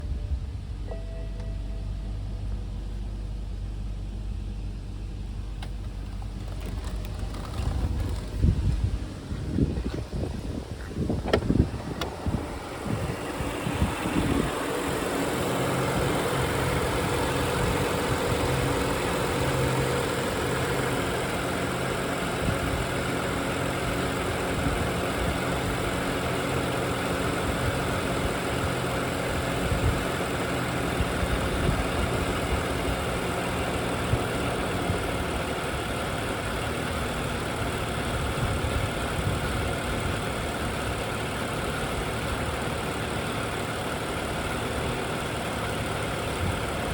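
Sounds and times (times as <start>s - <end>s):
car engine idling: 0.0s - 46.9s.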